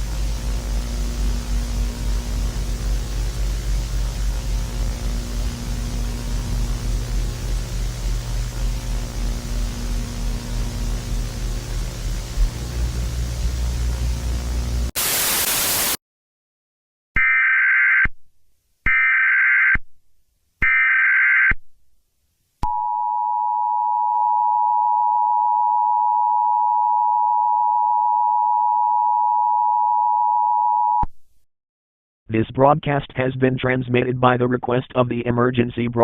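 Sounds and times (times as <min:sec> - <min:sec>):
digital data bursts: 0:00.0 - 0:16.0
static hiss: 0:00.0 - 0:16.0.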